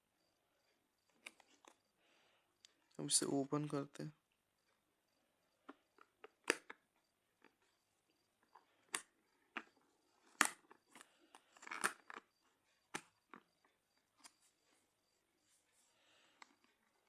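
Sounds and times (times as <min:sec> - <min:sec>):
sharp packaging clicks: 0:10.3 - 0:12.3.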